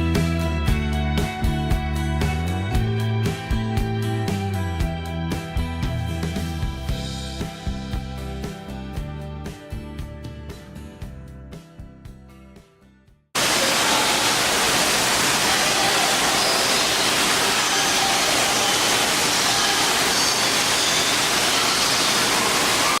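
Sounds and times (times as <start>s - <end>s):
background music: 0.0s - 13.0s
waterfall rushing: 13.4s - 23.0s.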